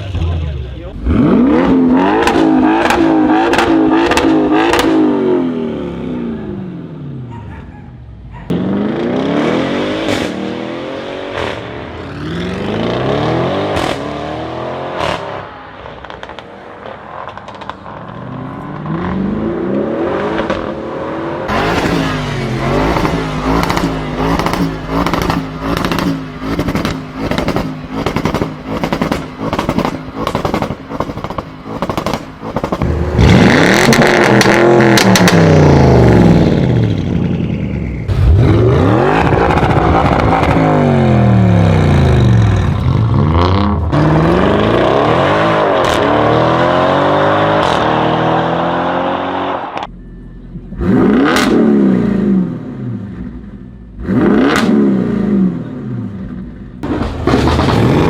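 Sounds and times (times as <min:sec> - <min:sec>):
car engine revving: 0:00.0 - 0:06.9, 0:08.5 - 0:58.0
exhaust crackles: 0:21.5 - 0:46.2.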